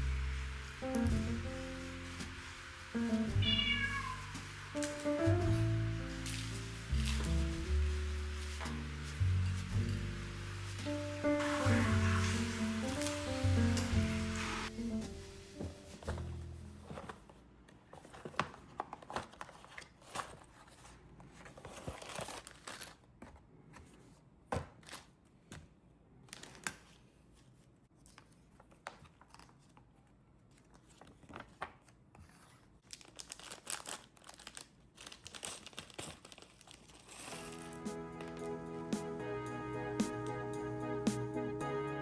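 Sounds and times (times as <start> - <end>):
plastic packaging crinkling and tearing: 0.0 - 16.8, 18.3 - 23.2, 32.8 - 38.6.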